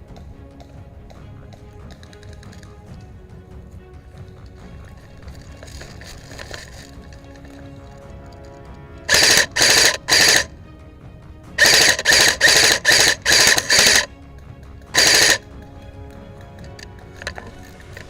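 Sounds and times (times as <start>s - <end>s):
airsoft rifle full-auto bursts: 9.1s - 10.5s, 11.6s - 14.1s, 15.0s - 15.4s.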